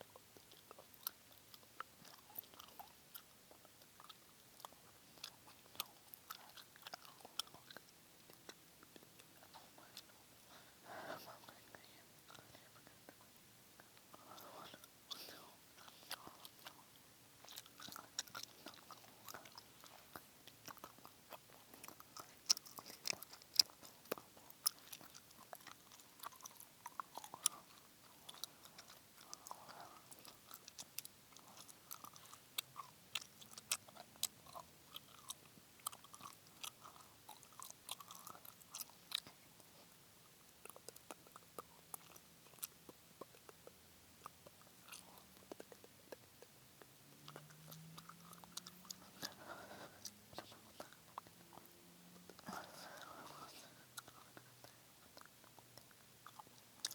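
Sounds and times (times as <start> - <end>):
chewing gum mouth sounds: 0.0 - 10.6, 11.2 - 56.9.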